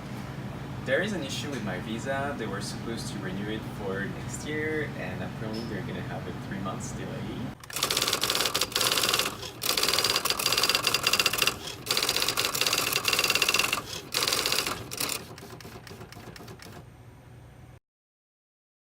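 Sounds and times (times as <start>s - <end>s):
typewriter typing: 7.6s - 16.8s.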